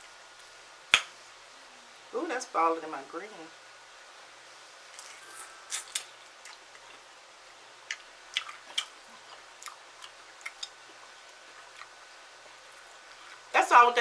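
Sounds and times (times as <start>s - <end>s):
chewing crispy food: 5.7s - 7.1s, 7.8s - 13.5s.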